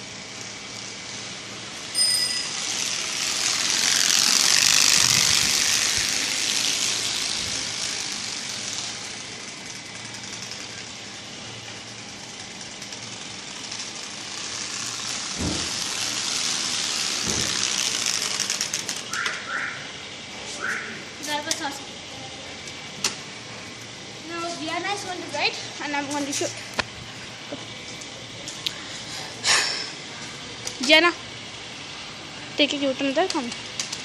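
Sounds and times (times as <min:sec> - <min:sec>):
card flapping in bicycle spokes: 0:02.5 - 0:19.4, 0:33.2 - 0:34.0.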